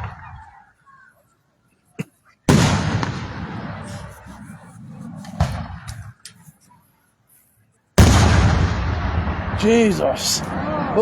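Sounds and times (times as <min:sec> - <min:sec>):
firework shell booms: 0:02.5 - 0:04.4, 0:05.2 - 0:06.1, 0:08.0 - 0:10.5
firework sharp crack: 0:02.5 - 0:06.2, 0:08.0 - 0:10.6.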